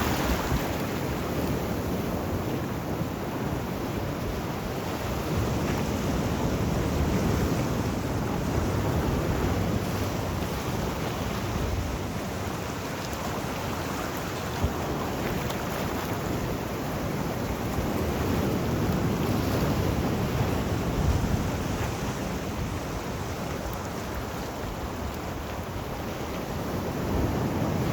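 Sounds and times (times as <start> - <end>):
sea waves washing ashore: 0.0 - 27.9.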